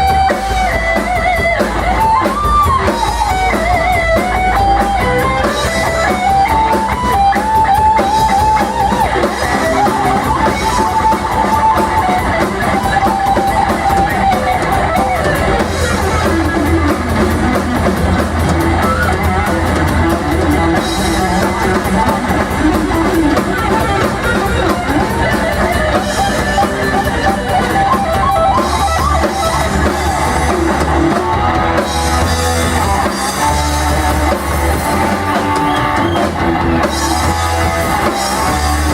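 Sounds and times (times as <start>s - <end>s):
lead electric guitar melody: 0.0s - 38.9s
rock band playing: 0.0s - 38.9s.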